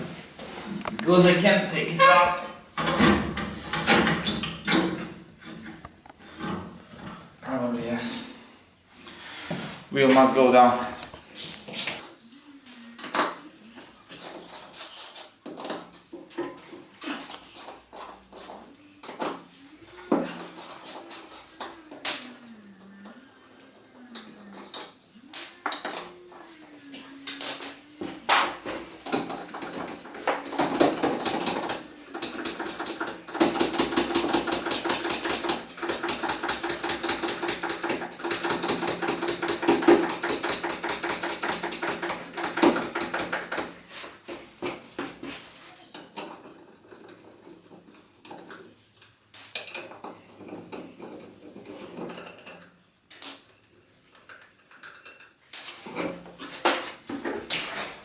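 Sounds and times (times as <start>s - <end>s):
rapid metal clicking and clanking: 29.0s - 43.8s.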